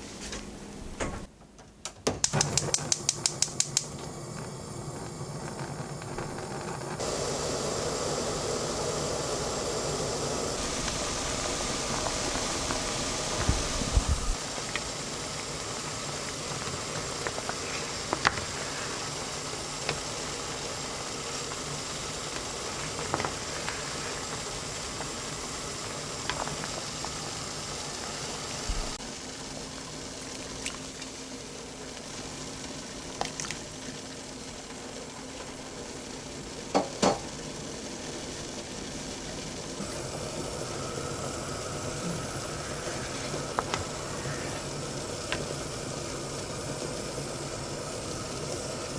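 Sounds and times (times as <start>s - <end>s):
utensil clicking against pot: 1.8s - 4.1s
pot of broth boiling: 2.3s - 48.9s.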